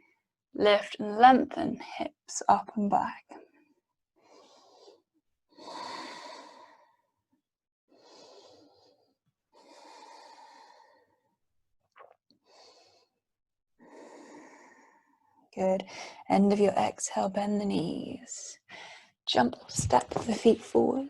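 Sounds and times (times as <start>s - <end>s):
woman breathing slowly: 4.2s - 7.2s, 7.9s - 11.4s, 12.4s - 13.2s, 13.8s - 16.3s, 18.7s - 19.2s.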